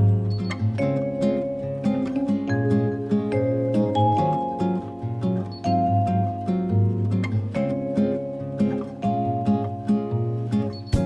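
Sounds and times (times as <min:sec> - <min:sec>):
plucked guitar music: 0:00.0 - 0:11.0.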